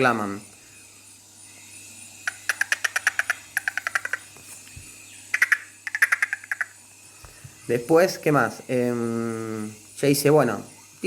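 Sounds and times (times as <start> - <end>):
man making clicking dolphin sounds: 2.3 - 4.2, 5.4 - 6.7.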